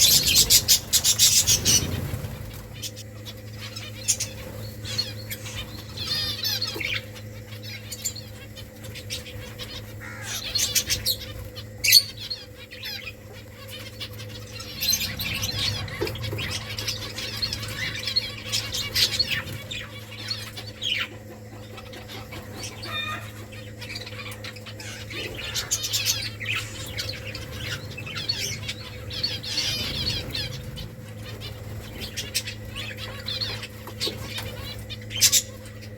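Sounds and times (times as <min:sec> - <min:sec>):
wing flutters: 0:00.0 - 0:07.2, 0:24.3 - 0:35.9
finches chirping: 0:00.0 - 0:35.9
steady low hum: 0:00.0 - 0:35.9.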